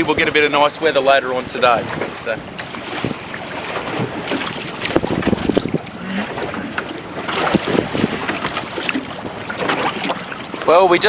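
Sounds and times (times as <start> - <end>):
water sloshing against boat: 0.0 - 11.0
wind buffeting microphone: 0.0 - 11.0.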